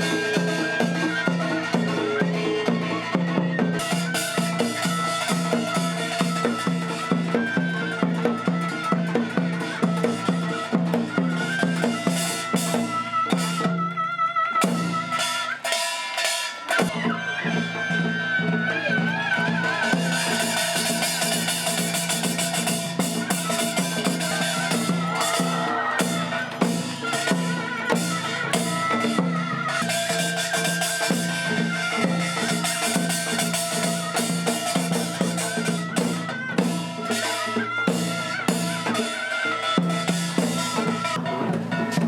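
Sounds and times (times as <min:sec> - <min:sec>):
drum and percussion strikes: 0:00.0 - 0:42.0
reedy wind instrument melody: 0:09.5 - 0:41.4.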